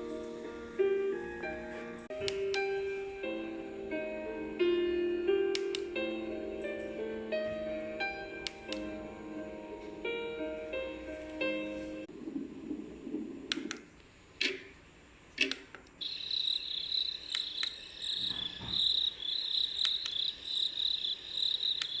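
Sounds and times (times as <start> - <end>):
piano music: 0.0 - 12.1
sharp clicks: 15.4 - 16.0, 17.2 - 18.2, 19.7 - 20.2, 21.7 - 22.0
crickets chirping: 16.0 - 22.0.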